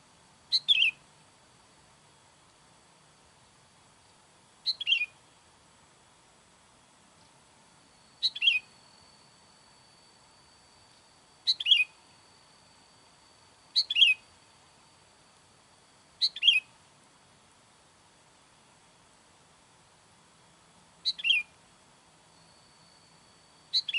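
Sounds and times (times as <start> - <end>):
bulbul call: 0.5 - 1.0, 11.5 - 12.0, 13.8 - 14.3.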